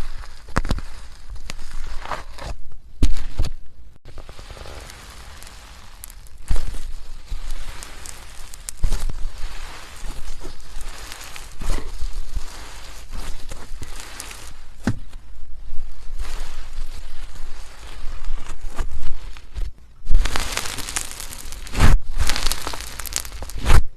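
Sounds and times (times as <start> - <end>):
slime crackling and squishing: 0.0 - 23.9.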